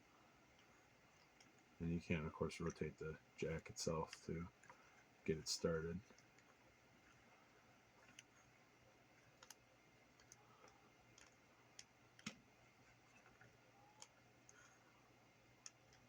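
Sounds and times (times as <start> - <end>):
faint small clicks of nut threading: 8.0 - 14.7.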